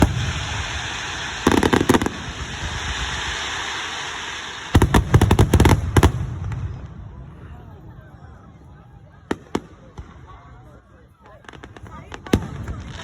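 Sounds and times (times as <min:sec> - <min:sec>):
steady hiss: 0:00.0 - 0:05.4
fireworks bangs and crackles: 0:00.0 - 0:13.0.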